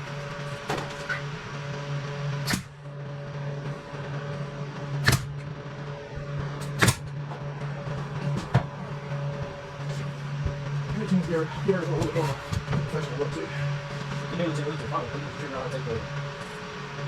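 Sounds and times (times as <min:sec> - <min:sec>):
steady hum: 0:00.0 - 0:17.0
nail gun firing: 0:02.4 - 0:02.8, 0:05.0 - 0:05.4, 0:06.6 - 0:07.1.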